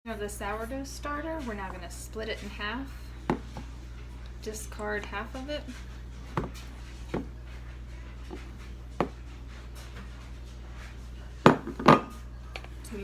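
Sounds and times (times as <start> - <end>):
steady low hum: 0.1 - 13.0
utensil knocking against container: 3.3 - 3.7, 11.5 - 12.1.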